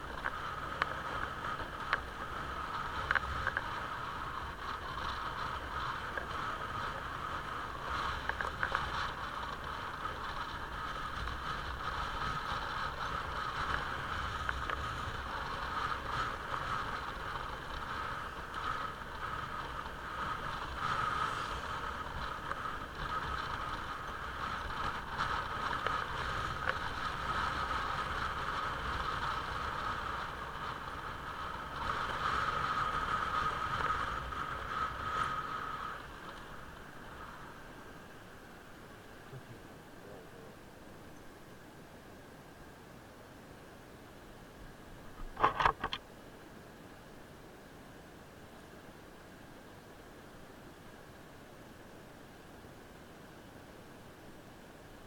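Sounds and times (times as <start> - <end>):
wind noise: 0.0 - 40.6.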